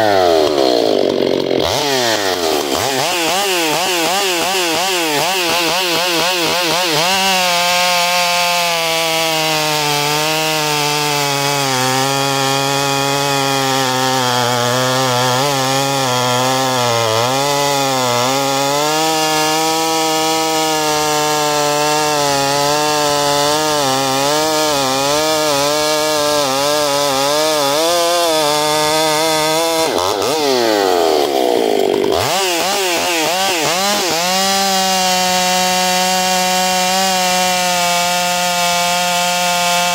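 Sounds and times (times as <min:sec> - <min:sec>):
chainsaw cutting wood at high revs: 0:00.0 - 0:39.9.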